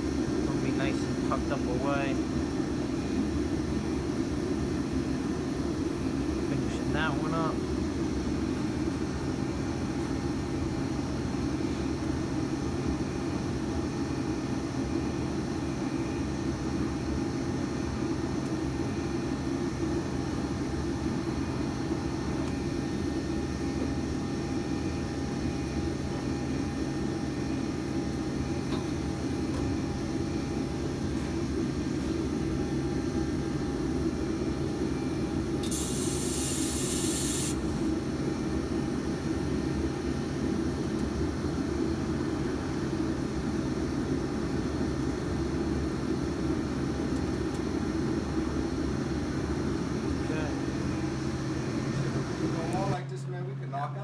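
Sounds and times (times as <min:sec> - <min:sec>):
high hiss: 0:35.6 - 0:37.9.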